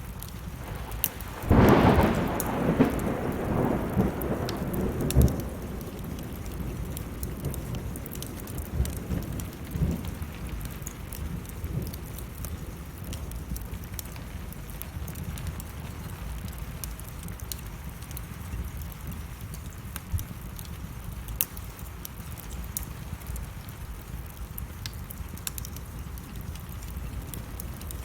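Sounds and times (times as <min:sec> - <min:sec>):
steady rain: 0:00.0 - 0:28.0
wood crackling in fireplace: 0:00.0 - 0:28.0
thunder rumbling: 0:00.5 - 0:18.1, 0:25.2 - 0:28.0.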